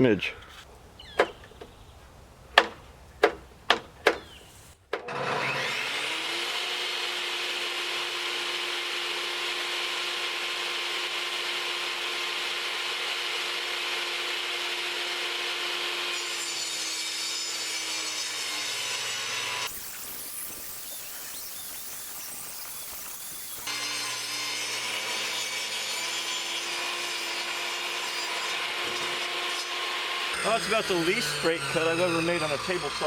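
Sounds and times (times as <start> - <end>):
sharp knocks: 1.2 - 1.8, 2.5 - 4.3
table saw ripping a board: 5.0 - 33.0.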